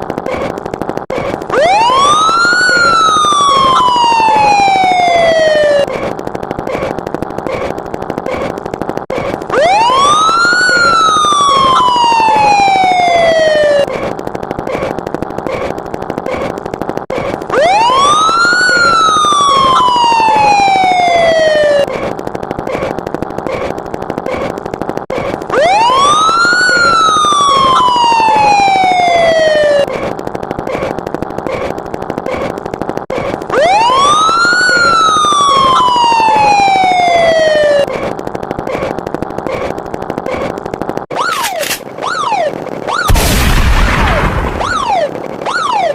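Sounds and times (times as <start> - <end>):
siren wail: 1.2 - 6.2, 9.2 - 14.2, 17.2 - 22.2, 25.2 - 30.2, 33.2 - 38.2, 41.1 - 45.9.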